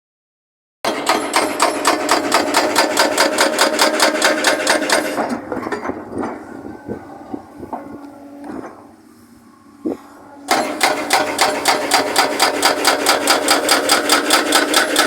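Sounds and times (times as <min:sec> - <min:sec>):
hydraulic breaker hammering: 0:00.9 - 0:06.7, 0:10.5 - 0:15.0
excavator engine running: 0:00.9 - 0:15.0.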